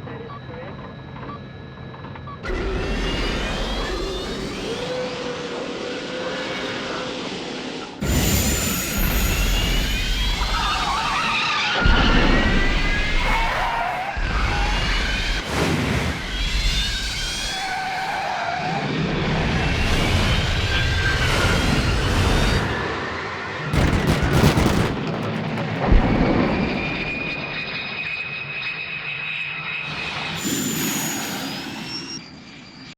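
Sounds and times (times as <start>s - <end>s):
sliding electronic whines: 1.0s - 32.9s
engine-like rushing roars: 18.3s - 28.0s.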